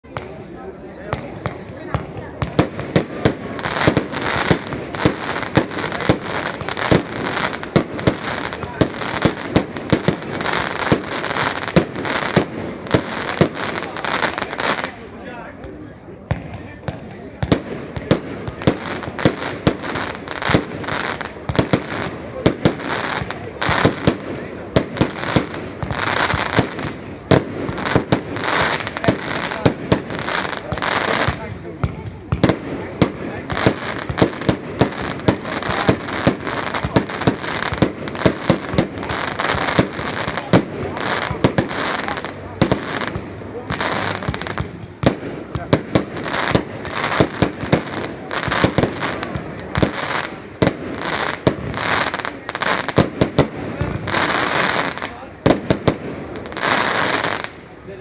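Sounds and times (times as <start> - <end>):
firework reports: 0.0 - 58.0
firework hiss: 1.3 - 15.2, 17.3 - 31.6.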